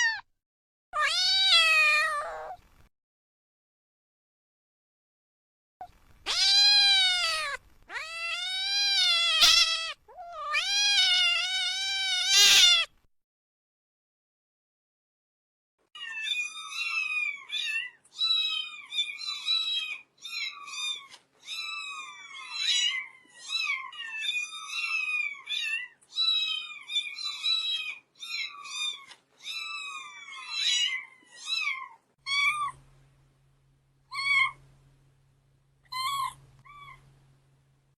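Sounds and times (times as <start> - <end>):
kitten mewing: 6.2 - 12.9
faint low hum: 32.2 - 37.9.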